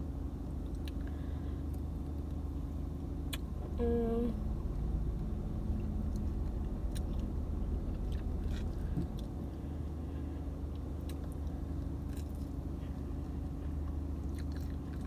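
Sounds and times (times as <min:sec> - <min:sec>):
low hum inside car: 0:00.0 - 0:15.0
open-mouthed chewing and lip smacking: 0:11.0 - 0:15.0.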